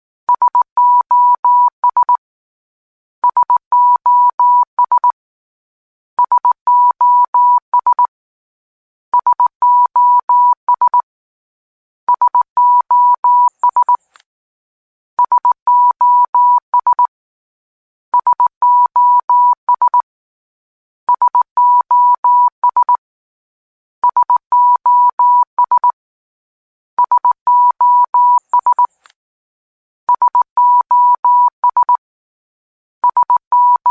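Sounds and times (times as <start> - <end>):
morse code beeps: 0.4 - 2.2, 12.1 - 14.0, 15.2 - 17.1, 18.2 - 20.0, 21.1 - 23.0, 24.0 - 26.0, 27.0 - 29.0, 30.1 - 32.0, 33.0 - 33.9.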